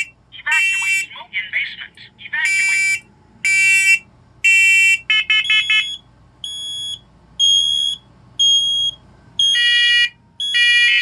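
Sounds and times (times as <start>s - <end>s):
smoke alarm chirps: 2.5s - 11.0s
smoke alarm high beeps: 2.5s - 11.0s.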